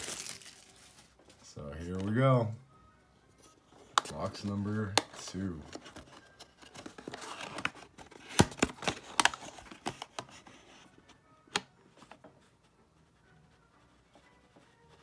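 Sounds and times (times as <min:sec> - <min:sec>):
packaging rustling: 0:00.0 - 0:01.2, 0:03.8 - 0:10.8.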